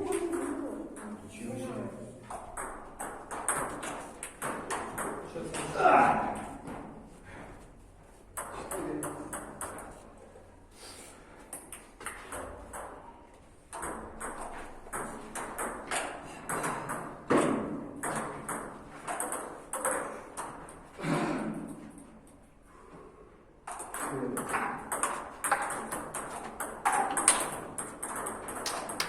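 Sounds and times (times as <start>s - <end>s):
table tennis ball clicks: 26.6s - 29.0s.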